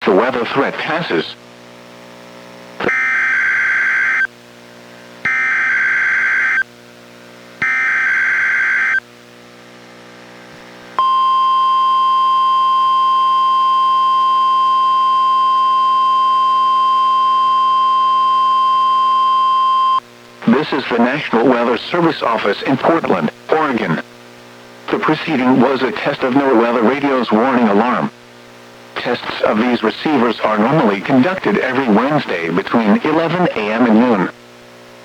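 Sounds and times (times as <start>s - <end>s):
steady warning alarm tone: 2.8s - 4.3s, 5.3s - 6.7s, 7.6s - 9.0s, 11.0s - 20.0s.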